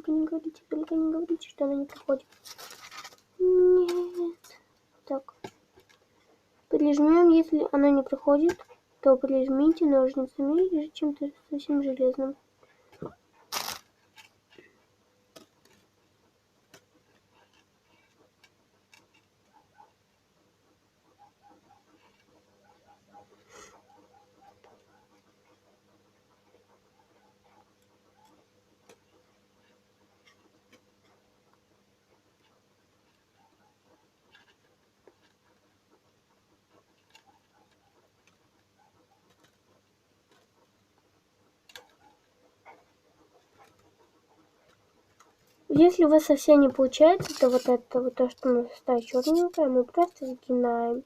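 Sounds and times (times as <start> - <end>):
clicks of beads handled: 13.5 - 14.4.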